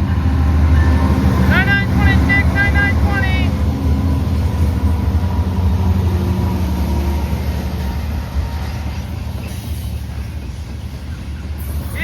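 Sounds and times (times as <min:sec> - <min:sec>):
diesel train rumble: 0:00.0 - 0:12.0.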